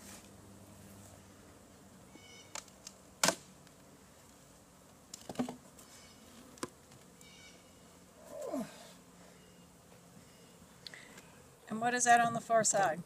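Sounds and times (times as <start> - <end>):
bees humming: 0.4 - 13.0
wooden beehive frames knocking: 5.1 - 5.7.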